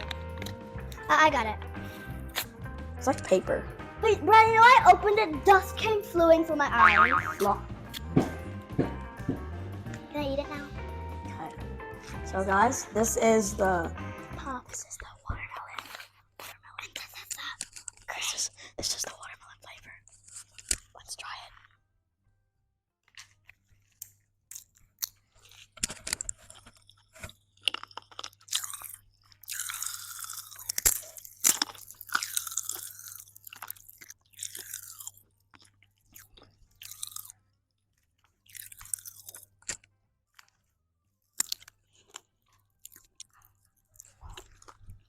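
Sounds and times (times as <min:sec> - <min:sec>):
crunchy chewing: 0:00.0 - 0:01.0, 0:23.0 - 0:45.0
popping candy crackling in mouth: 0:00.0 - 0:03.3, 0:14.7 - 0:21.8, 0:23.0 - 0:45.0.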